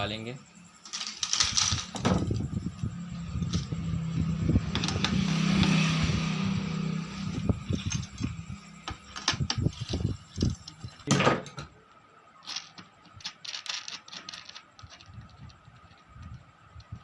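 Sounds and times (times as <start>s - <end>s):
metal fan housing handled: 7.2s - 11.5s.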